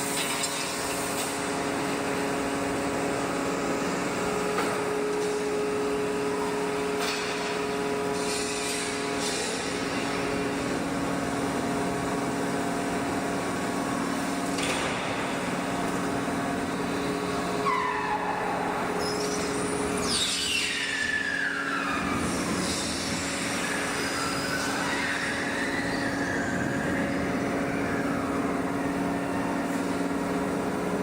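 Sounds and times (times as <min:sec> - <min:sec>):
industrial machinery humming: 0:00.0 - 0:31.0
high metallic squeals: 0:17.6 - 0:28.5.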